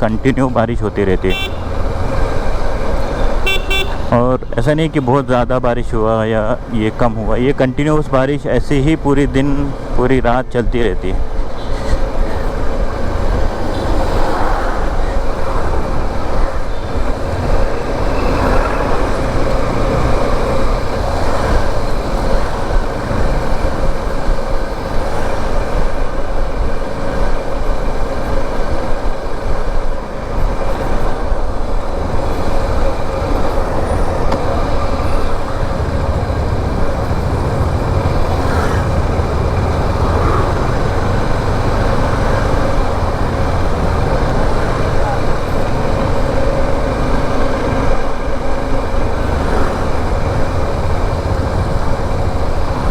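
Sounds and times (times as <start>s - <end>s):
wind and road noise: 0.0s - 52.9s
motorcycle engine running: 1.3s - 4.1s, 14.8s - 52.9s.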